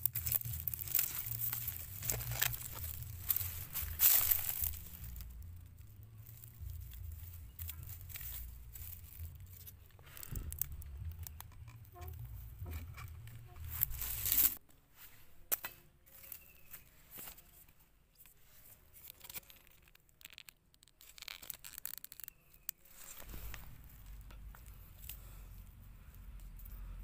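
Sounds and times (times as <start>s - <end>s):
scraping and rustling handling noises: 0.0s - 27.0s
low rumble: 0.1s - 14.6s.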